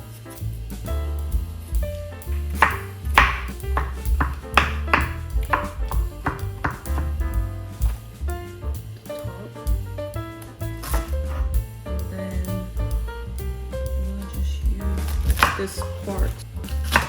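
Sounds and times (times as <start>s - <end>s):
background music with bass line: 0.0s - 17.0s
knife chopping on cutting board: 2.6s - 7.2s, 15.3s - 15.9s.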